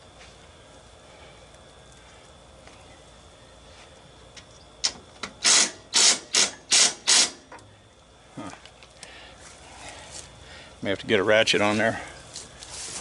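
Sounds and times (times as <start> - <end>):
impact wrench bursts: 4.8 - 7.5.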